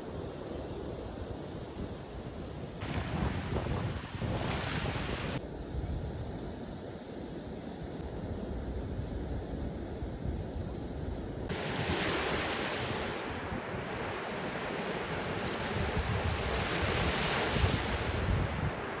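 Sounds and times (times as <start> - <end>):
wind rumbling on microphone: 1.0 - 6.8, 8.0 - 19.0
ocean surf washing onto beach: 2.8 - 5.4, 11.5 - 19.0.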